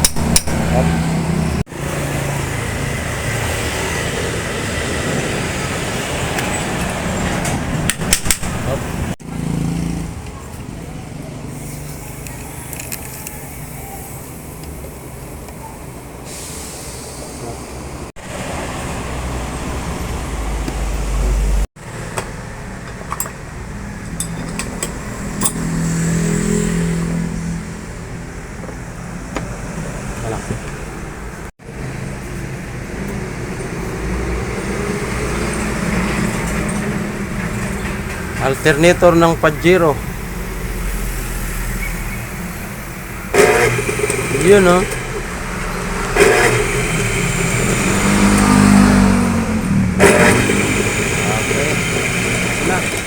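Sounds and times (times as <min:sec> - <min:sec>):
sharp metallic clicks: 0:00.0 - 0:00.7
vehicle engine running: 0:17.4 - 0:53.0
mechanical running hum: 0:49.7 - 0:53.0.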